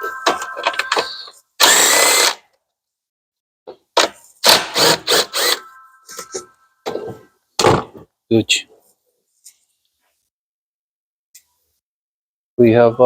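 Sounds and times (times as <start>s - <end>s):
power tool burst: 1.6s - 2.4s, 4.4s - 5.6s.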